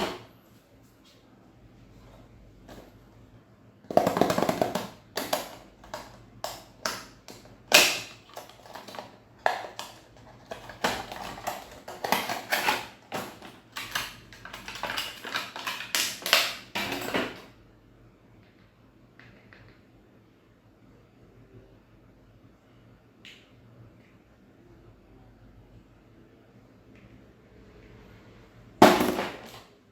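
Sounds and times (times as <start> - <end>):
packaging rustling and crinkling: 7.7 - 17.2.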